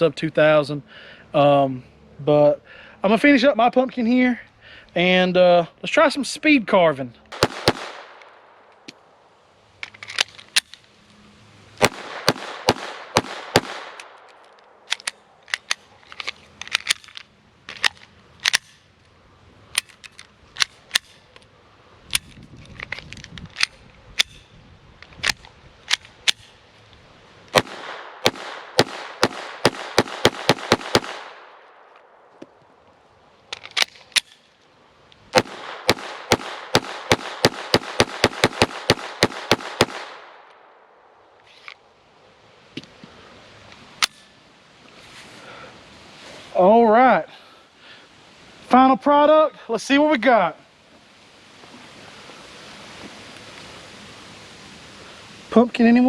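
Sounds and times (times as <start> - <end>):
pistol shots: 7.3 - 8.7, 11.8 - 14.3, 27.6 - 31.8, 35.4 - 40.5.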